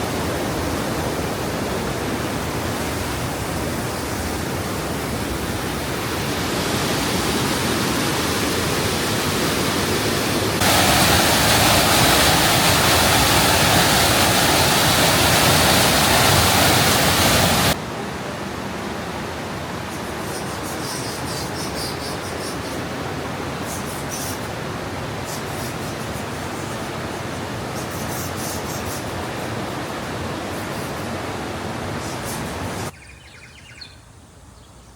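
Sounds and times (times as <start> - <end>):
waterfall roaring: 0.0 - 20.7, 22.0 - 25.5, 26.4 - 32.9.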